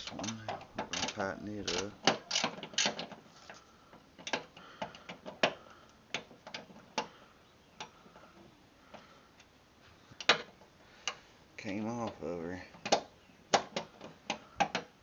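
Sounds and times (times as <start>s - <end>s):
wrench clicking on bolt: 0.0s - 3.1s.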